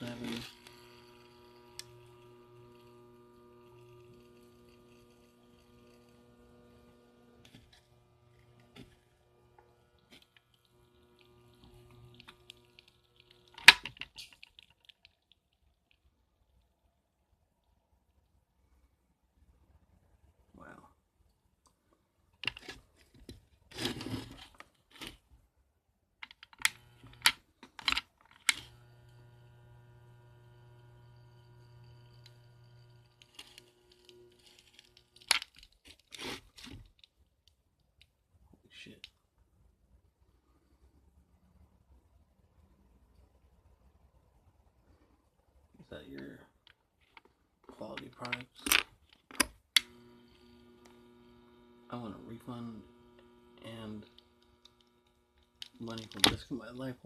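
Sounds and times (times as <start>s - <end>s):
steady low hum: 0.0s - 13.8s, 28.5s - 35.3s, 49.8s - 57.0s
faint electrical mains hum: 0.0s - 57.0s
objects clicking and knocking: 12.1s - 15.6s.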